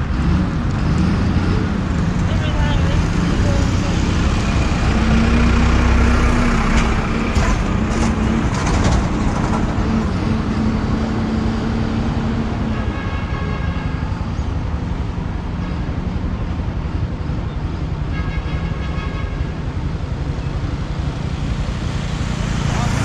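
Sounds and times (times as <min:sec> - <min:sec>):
engine hum: 0:00.0 - 0:18.1, 0:19.0 - 0:23.0
vehicle engine and road noise: 0:00.0 - 0:23.0.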